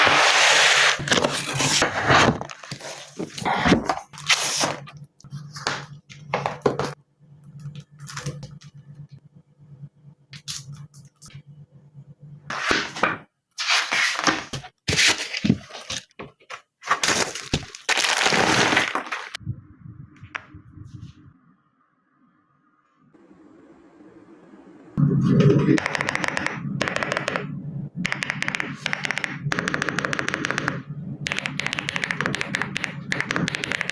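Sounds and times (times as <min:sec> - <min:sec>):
packaging rustling and crackling: 0:15.0 - 0:19.4
steady low hum: 0:19.4 - 0:33.9.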